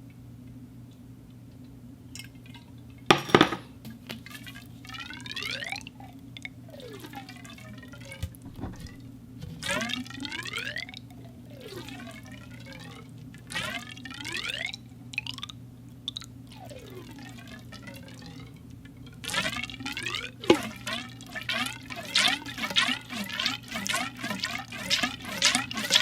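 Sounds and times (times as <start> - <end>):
water sloshing in a pipe: 2.1 - 3.3, 3.9 - 26.0
resonant tones sweeping in pitch: 6.7 - 14.9, 16.5 - 26.0.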